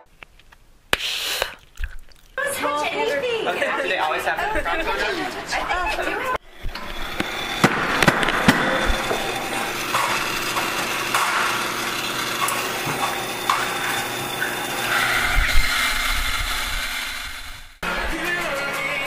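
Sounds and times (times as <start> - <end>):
market crowd din: 2.4 - 15.7.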